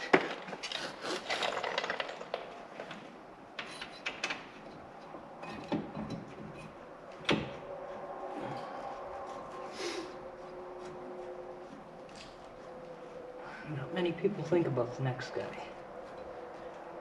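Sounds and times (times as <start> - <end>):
faint steady hum with tones: 3.0 - 17.0
clinking of metal tools and parts: 3.6 - 6.8.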